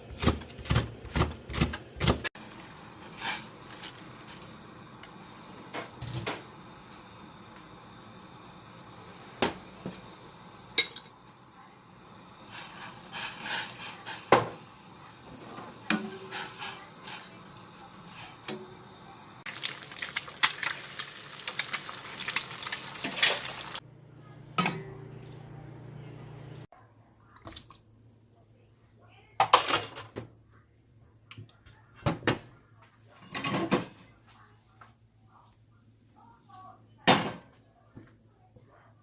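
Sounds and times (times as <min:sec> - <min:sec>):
dishes and utensils clinking: 0:10.8 - 0:11.2, 0:15.3 - 0:17.4.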